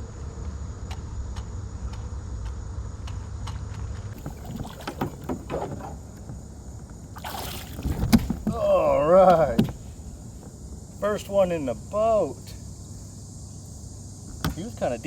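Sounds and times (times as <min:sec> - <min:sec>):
water splashing and sloshing: 0:04.2 - 0:10.6
wind rumble on microphone: 0:07.6 - 0:10.8.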